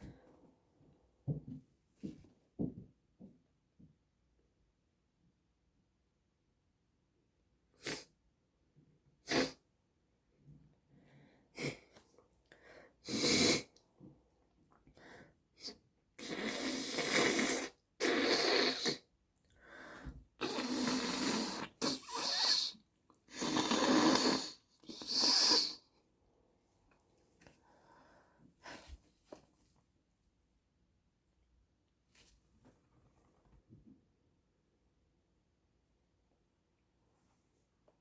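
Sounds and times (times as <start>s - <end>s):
person blowing nose: 7.8s - 8.1s, 9.2s - 9.6s, 13.0s - 13.7s, 15.6s - 19.1s, 20.4s - 25.8s.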